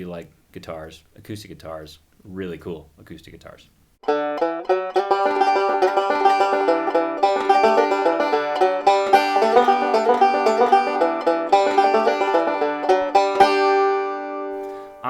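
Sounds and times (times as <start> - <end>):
banjo picked fast: 4.0 - 14.9.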